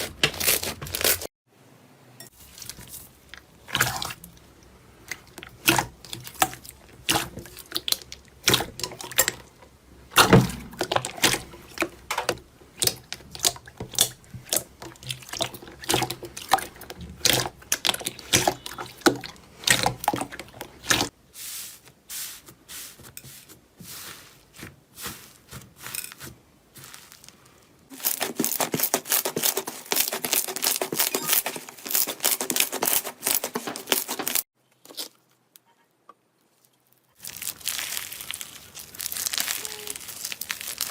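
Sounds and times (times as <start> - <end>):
slime popping and crackling: 37.2 - 40.9.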